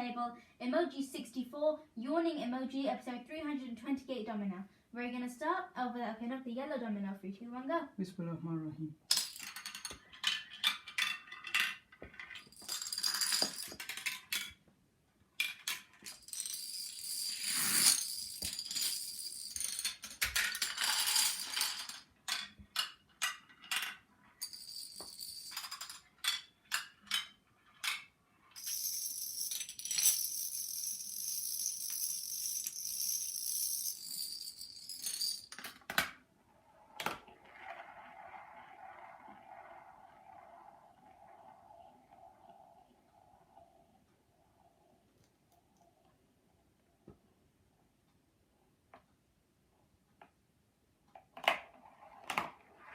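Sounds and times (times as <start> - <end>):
dominoes toppling clatter: 9.1 - 14.6, 15.4 - 42.8.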